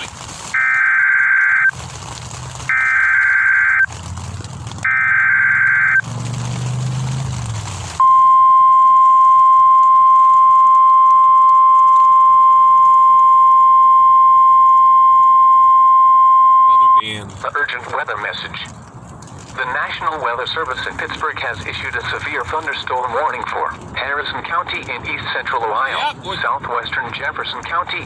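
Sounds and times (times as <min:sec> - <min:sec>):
harsh buzzing data bursts: 0:02.7 - 0:03.9, 0:04.8 - 0:06.0
steady high alarm tone: 0:02.7 - 0:03.9, 0:04.9 - 0:06.0, 0:08.0 - 0:17.0.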